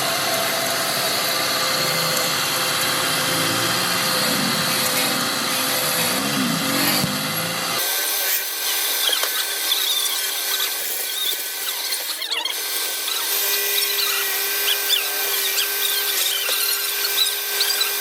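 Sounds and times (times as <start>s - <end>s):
power tool whining on wood: 0.0s - 18.0s
short high squeaks: 8.6s - 18.0s.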